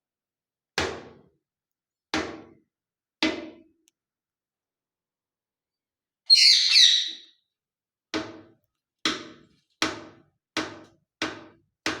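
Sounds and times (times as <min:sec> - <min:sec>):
parrot squeaky call: 0:06.3 - 0:07.4.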